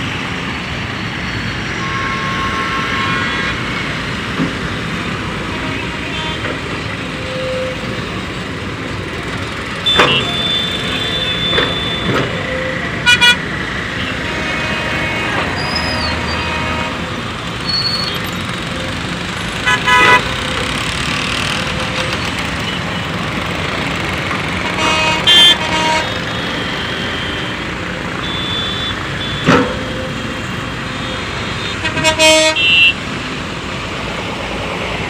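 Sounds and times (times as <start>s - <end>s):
vehicle horns honking: 1.7s - 4.0s, 5.4s - 8.0s, 9.8s - 19.0s, 19.6s - 20.8s, 24.6s - 33.0s.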